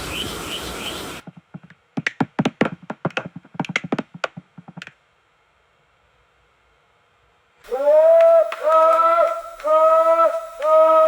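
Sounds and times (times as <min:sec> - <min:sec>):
noisy ambience: 0:00.0 - 0:11.0
sharp taps and knocks: 0:01.2 - 0:05.0.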